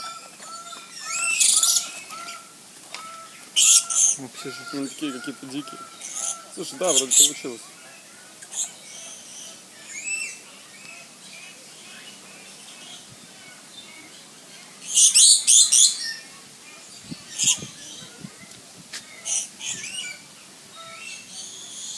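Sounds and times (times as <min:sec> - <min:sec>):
parrots screeching: 0:00.0 - 0:07.4.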